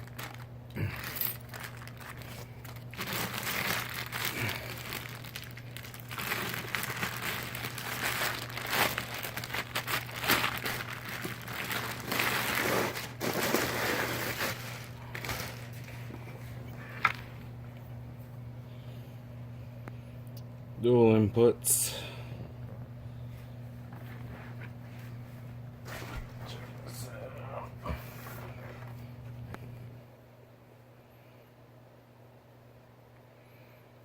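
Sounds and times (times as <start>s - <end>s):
plastic packaging crinkling: 0.0s - 17.4s, 25.8s - 26.9s, 28.0s - 29.4s.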